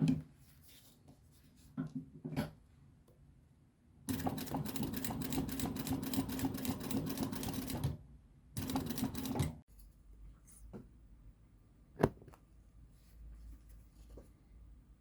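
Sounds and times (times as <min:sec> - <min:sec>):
sewing machine stitching leather: 0:04.1 - 0:08.0, 0:08.6 - 0:09.6.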